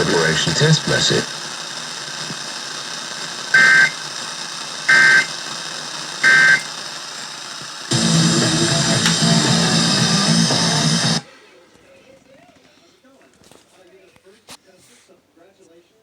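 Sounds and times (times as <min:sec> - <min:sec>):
radio hiss: 0:00.0 - 0:11.9
two-tone digital data warble: 0:03.6 - 0:04.0, 0:04.9 - 0:05.3, 0:06.2 - 0:06.7
music: 0:07.9 - 0:11.2.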